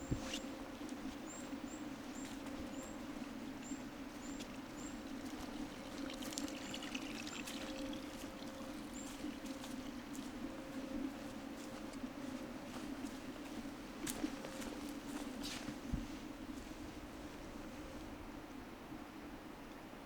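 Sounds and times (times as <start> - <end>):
bird peeping: 1.3 - 10.3.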